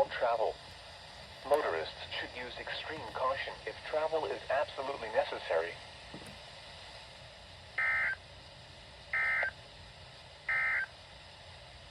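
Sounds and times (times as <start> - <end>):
faint radio hiss: 0.0 - 11.9
buzzy two-tone digital chirps: 7.8 - 8.2, 9.2 - 9.5, 10.5 - 10.9.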